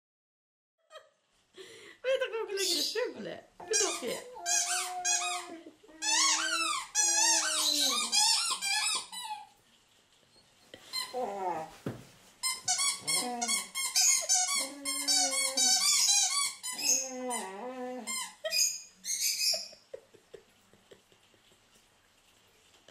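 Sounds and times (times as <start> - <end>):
dog whining squeaky vocal sounds: 3.6 - 9.6, 10.8 - 11.8, 12.4 - 19.8.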